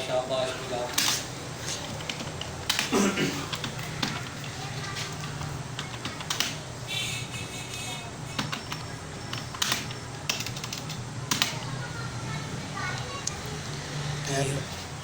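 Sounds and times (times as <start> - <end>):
steady low hum: 0.0 - 15.0
keyboard keys clicking: 0.9 - 6.7, 8.3 - 11.7.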